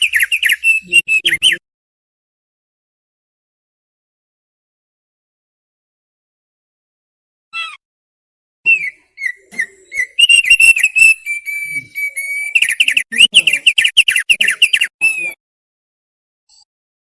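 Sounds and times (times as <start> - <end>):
bird singing whistled phrase: 0.0 - 1.6, 8.7 - 15.4.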